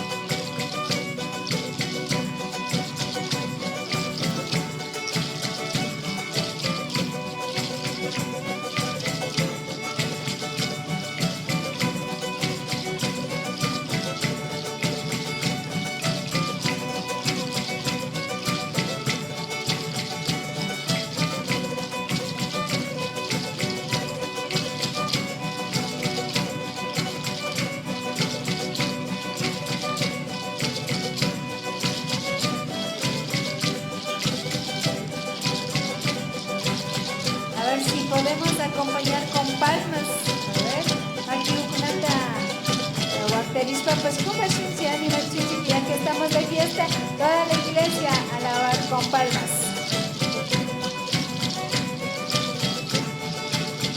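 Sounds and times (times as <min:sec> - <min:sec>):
folk band playing: 0:00.0 - 0:53.9.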